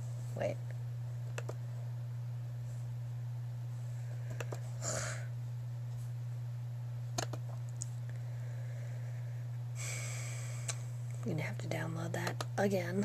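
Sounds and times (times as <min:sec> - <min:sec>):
steady low hum: 0:00.0 - 0:13.0
computer mouse clicks: 0:01.3 - 0:01.6, 0:04.3 - 0:04.6.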